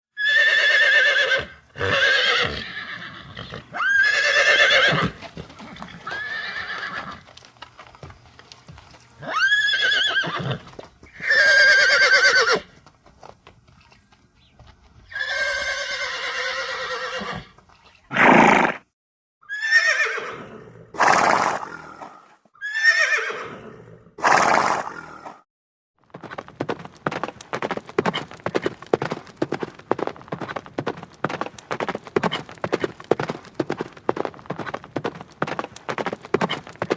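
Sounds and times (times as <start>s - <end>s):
horse whinnying: 0.2s - 7.2s, 9.2s - 12.7s, 15.1s - 17.5s, 18.1s - 18.8s, 19.4s - 21.9s, 22.6s - 25.2s.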